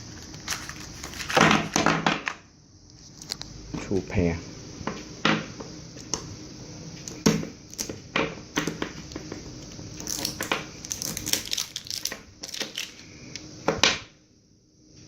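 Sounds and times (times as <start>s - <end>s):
plastic packaging crinkling: 0.0s - 1.8s, 9.9s - 13.1s.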